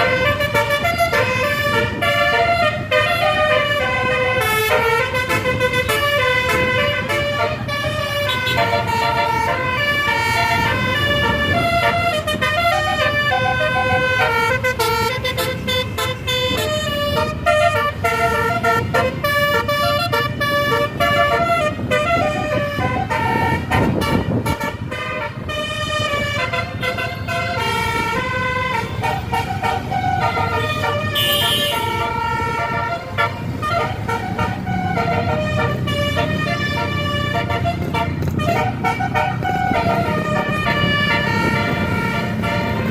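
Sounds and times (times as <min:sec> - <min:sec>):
bus engine rumble: 0:00.0 - 0:42.9
tuned air horns playing a melody: 0:00.0 - 0:42.9.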